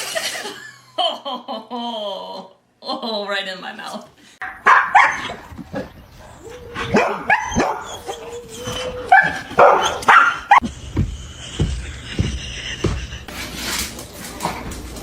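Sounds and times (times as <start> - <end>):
dog barking: 4.4 - 5.4, 6.9 - 8.0, 9.1 - 10.6.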